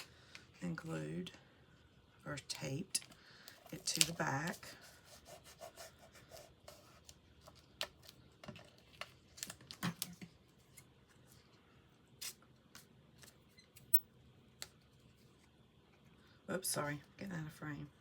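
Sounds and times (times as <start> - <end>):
paper rustling: 3.5 - 4.9.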